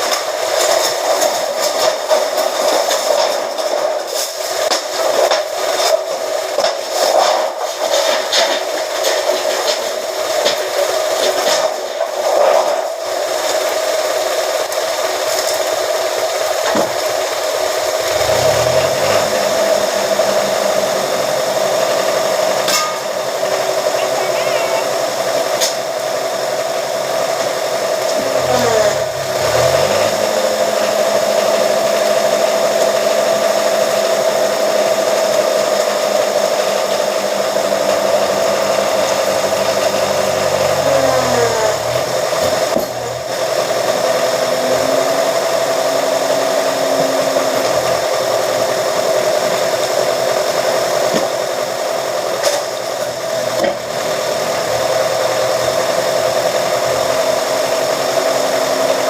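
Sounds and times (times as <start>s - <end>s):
press machine motor humming: 16.9s - 27.4s
deeper hum sliding in pitch: 18.0s - 25.0s, 39.2s - 49.6s.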